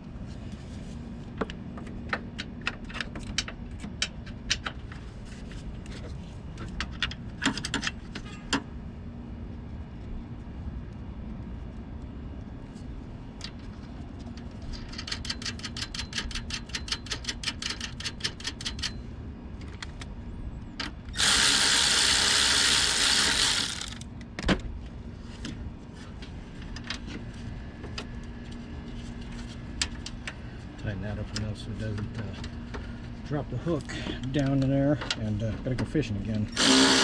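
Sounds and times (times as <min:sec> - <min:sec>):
ratchet wrench clicking: 0:21.2 - 0:24.0, 0:36.6 - 0:37.0.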